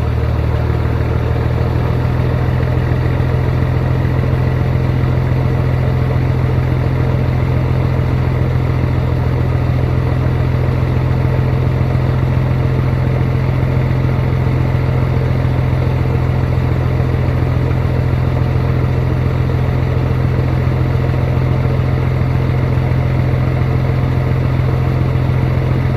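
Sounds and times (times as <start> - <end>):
diesel engine idling: 0.0 - 25.9.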